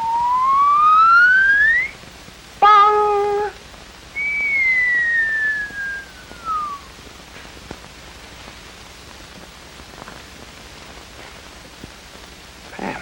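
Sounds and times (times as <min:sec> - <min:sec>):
whistle sliding down: 0:00.0 - 0:02.0, 0:04.2 - 0:06.9
soundtrack hiss: 0:00.0 - 0:13.0.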